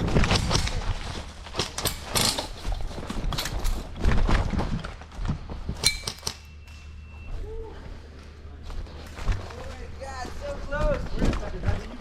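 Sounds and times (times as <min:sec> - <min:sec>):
thin ringing tone: 0:05.8 - 0:07.4.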